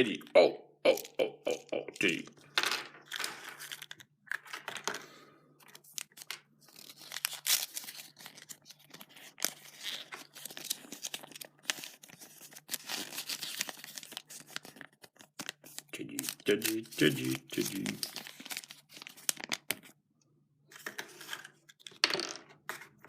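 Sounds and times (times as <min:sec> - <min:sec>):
wrapper crinkling and tearing: 0:03.0 - 0:04.6, 0:05.6 - 0:19.9.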